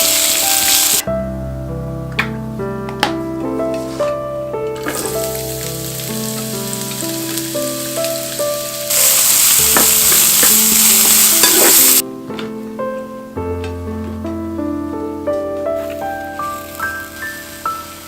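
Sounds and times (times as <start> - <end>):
food sizzling in a pan: 0.0 - 1.0, 4.8 - 12.0.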